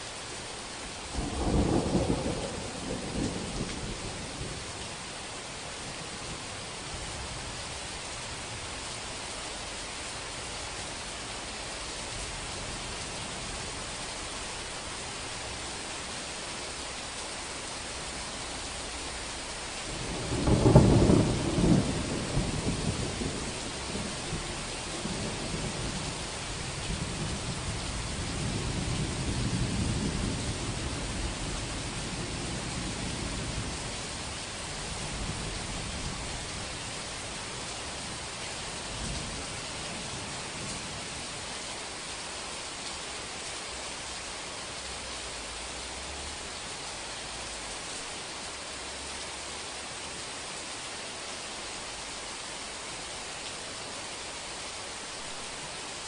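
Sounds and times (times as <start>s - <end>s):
heavy rain: 0.0s - 56.0s
thunder clap and rumble: 1.2s - 4.6s, 20.0s - 33.7s.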